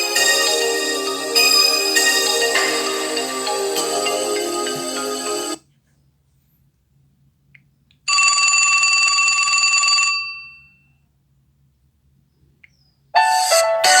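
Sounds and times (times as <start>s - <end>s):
phone ringtone: 0.0s - 5.6s.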